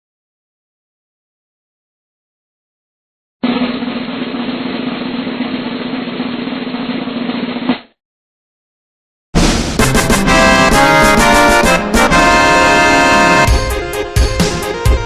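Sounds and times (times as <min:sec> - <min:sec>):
snare drum roll: 0:03.4 - 0:07.9, 0:09.4 - 0:12.5
brass music: 0:09.4 - 0:15.0.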